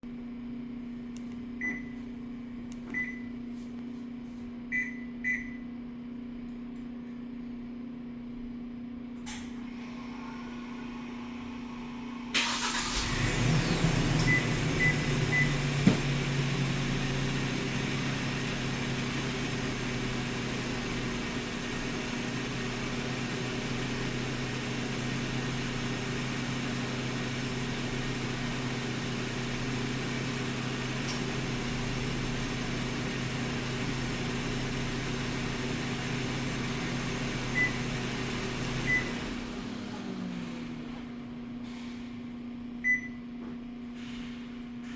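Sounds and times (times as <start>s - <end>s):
short electronic beeps: 4.7s - 5.6s
truck engine idling: 11.1s - 40.2s
truck engine cranking: 12.4s - 16.1s.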